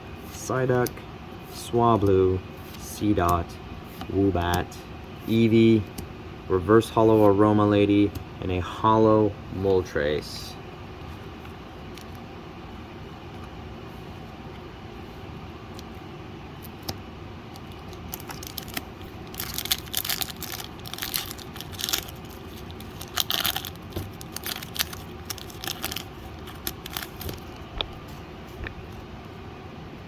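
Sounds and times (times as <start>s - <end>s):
steady low hum: 0.0s - 30.0s
foil wrapper tearing and crinkling: 17.6s - 27.6s.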